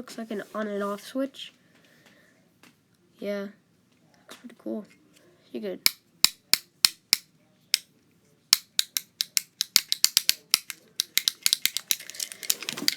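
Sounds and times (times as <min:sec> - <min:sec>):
fidget cube plastic clicks: 0:08.6 - 0:12.9.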